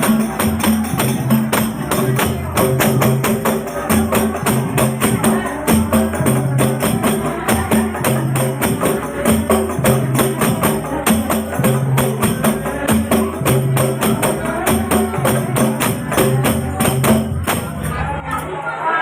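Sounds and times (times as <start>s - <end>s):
frame drums played by hand: 0.0s - 18.0s.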